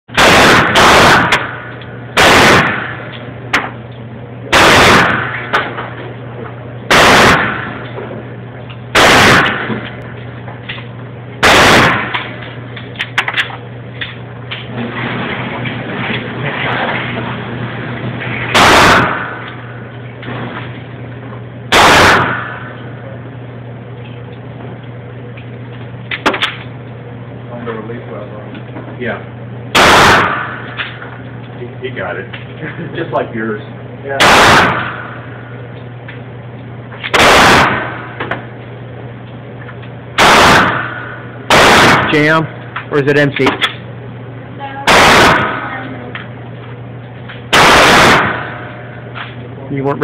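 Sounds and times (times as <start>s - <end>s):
loud gunshots: 0.1s - 3.1s, 4.5s - 5.8s, 6.9s - 7.8s, 8.9s - 10.0s, 11.4s - 12.4s, 18.4s - 20.5s, 21.7s - 23.0s, 29.7s - 30.8s, 34.1s - 35.5s, 37.1s - 38.4s, 40.2s - 42.5s, 44.8s - 45.8s, 47.5s - 48.9s.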